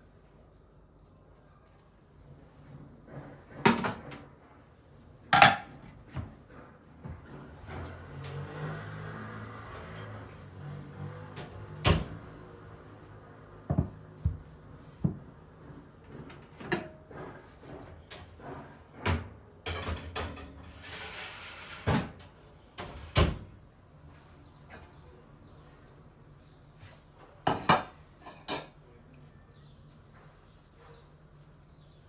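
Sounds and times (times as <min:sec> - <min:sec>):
kitchen items knocking and clattering: 0:05.3 - 0:06.3, 0:16.1 - 0:20.7, 0:27.4 - 0:28.8.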